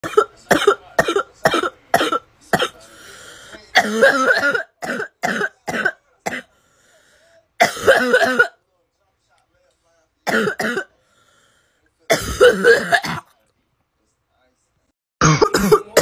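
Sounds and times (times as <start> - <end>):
noisy breath in: 2.8 - 3.7, 6.5 - 7.5, 11.0 - 11.9
girl's barking cough: 15.2 - 16.0.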